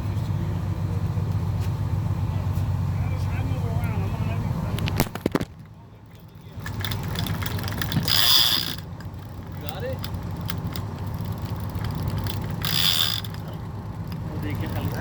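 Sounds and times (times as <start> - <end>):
boat engine hum: 0.0 - 15.0
fishing reel cranked: 6.2 - 15.0.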